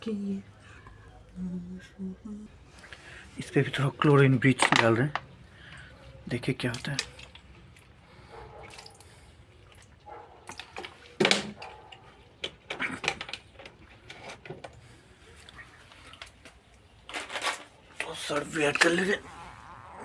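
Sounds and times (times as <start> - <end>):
liquid splashing in a tub: 4.0 - 17.1.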